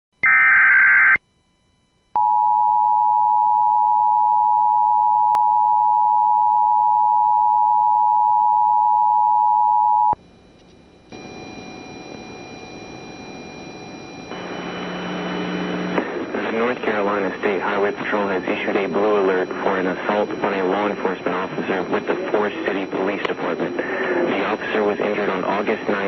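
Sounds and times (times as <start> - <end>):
data burst: 11.2 - 26.0.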